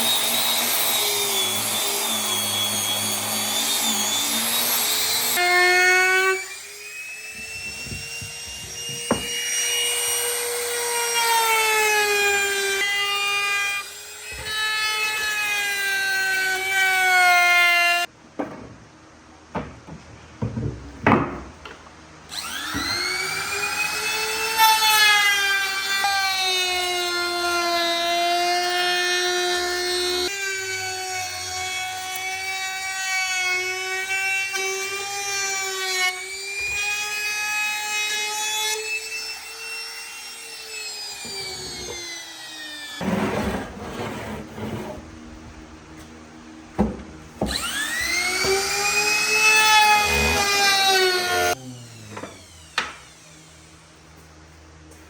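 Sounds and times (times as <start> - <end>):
power tool motor whining on wood: 0.0 - 17.0, 22.3 - 45.0, 47.4 - 53.9
knocks: 8.7 - 9.4.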